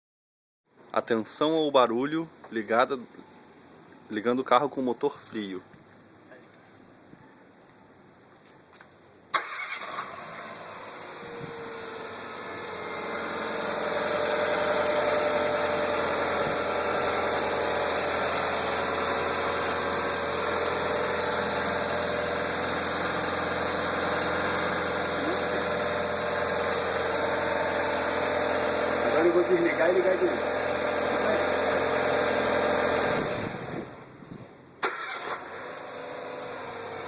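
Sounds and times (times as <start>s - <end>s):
car engine idling: 9.4s - 33.3s
engine whine: 9.4s - 34.1s.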